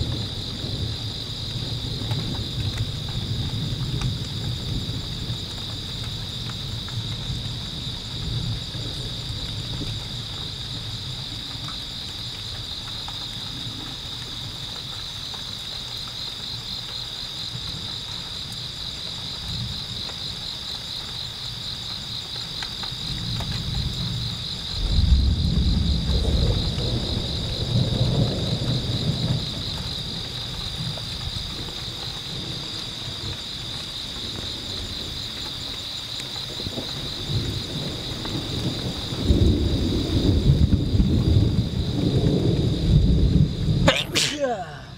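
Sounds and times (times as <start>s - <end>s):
thunder rumbling: 0.0s - 11.7s, 23.6s - 31.7s, 36.6s - 43.9s
insects chirping: 0.0s - 44.9s
rain: 0.0s - 44.9s.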